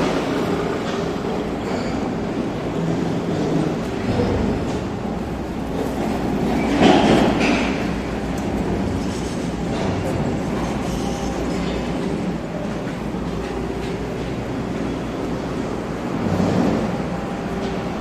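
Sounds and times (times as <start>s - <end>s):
train wheels rumbling on track: 0.0s - 18.0s.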